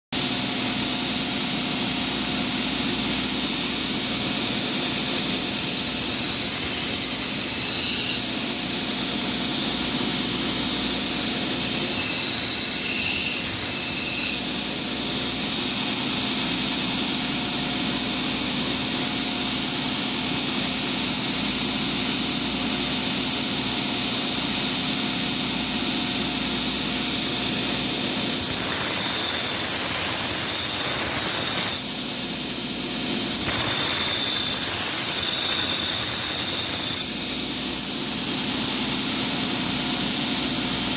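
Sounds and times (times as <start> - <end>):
belt grinder abrasive hiss: 26.6 - 37.9
high grinding tones: 27.3 - 31.9, 33.3 - 37.4.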